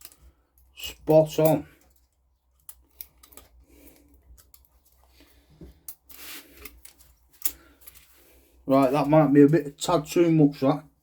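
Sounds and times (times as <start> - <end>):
metallic clicks of hand tools: 0.0 - 0.2.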